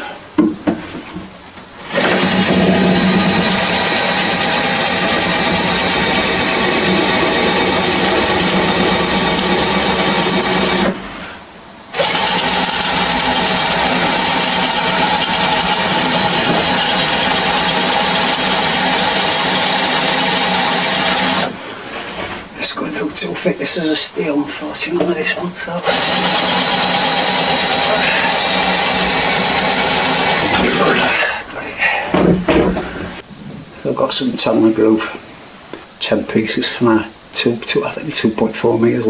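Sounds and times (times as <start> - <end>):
power drill drilling through steel: 1.9 - 11.1, 11.9 - 21.6, 25.8 - 31.1.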